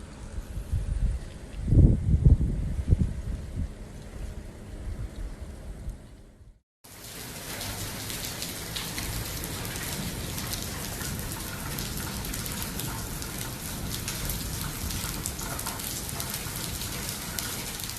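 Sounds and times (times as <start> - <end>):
steady rain falling: 6.9 - 17.9.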